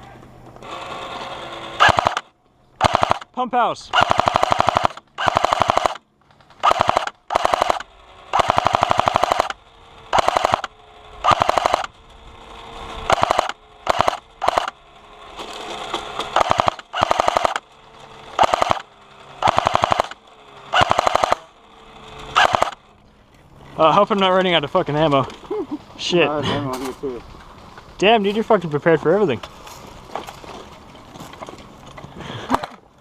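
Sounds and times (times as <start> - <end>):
airsoft gun full-auto bursts: 0.7 - 3.3, 3.9 - 11.9, 13.0 - 14.8, 16.3 - 17.7, 18.3 - 22.9.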